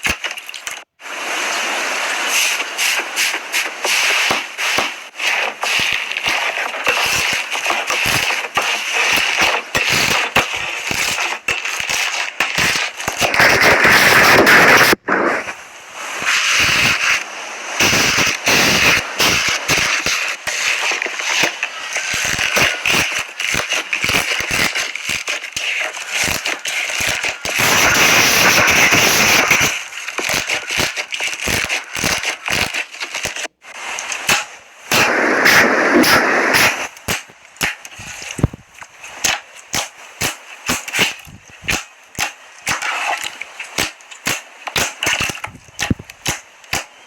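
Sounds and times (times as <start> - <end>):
slime crackling and popping: 0.0 - 0.9, 2.4 - 15.6, 17.8 - 33.5, 34.1 - 47.0.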